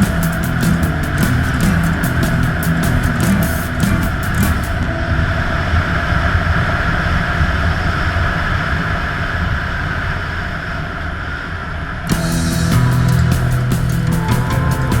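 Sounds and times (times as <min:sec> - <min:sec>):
motorcycle engine running: 0:00.0 - 0:04.9, 0:12.1 - 0:15.0
road noise: 0:00.0 - 0:07.5, 0:12.0 - 0:15.0.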